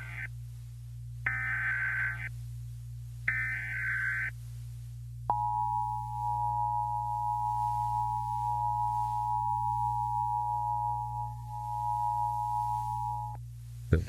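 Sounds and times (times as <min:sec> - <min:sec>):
low hum: 0:00.0 - 0:14.0
two-tone alarm tone: 0:05.3 - 0:13.4.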